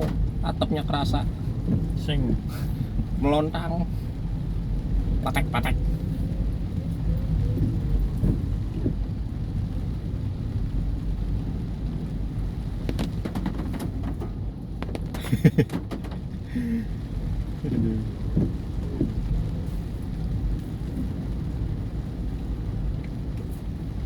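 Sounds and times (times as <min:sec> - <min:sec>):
heavy rain on a car roof: 0:00.0 - 0:24.0
moving car rumble: 0:00.0 - 0:24.0
sharp knocks on roof: 0:12.9 - 0:16.2.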